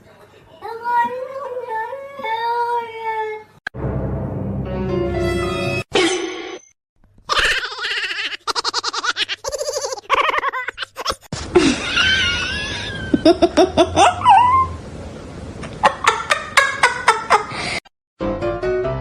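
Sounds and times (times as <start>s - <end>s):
people laughing: 9.4s - 14.2s.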